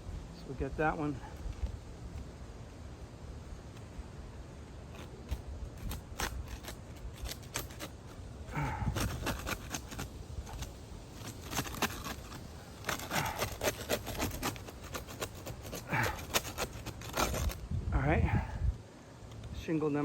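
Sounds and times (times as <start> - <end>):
shingles scraping and clicking: 4.9 - 17.6.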